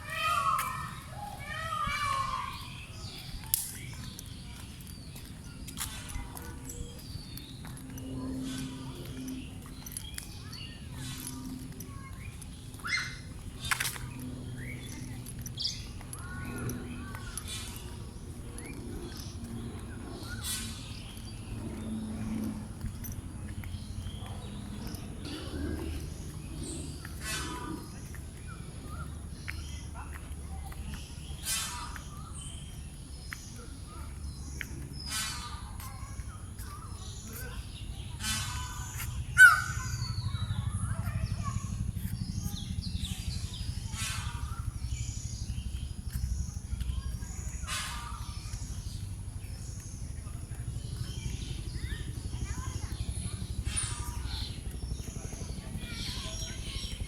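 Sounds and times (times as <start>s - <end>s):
murmur of distant voices: 0.0s - 57.0s
small birds chirping: 0.0s - 57.0s
steady low rumble: 0.0s - 57.0s
loud harsh bird calls: 24.8s - 28.1s, 38.2s - 41.6s, 43.8s - 46.3s, 47.5s - 48.7s.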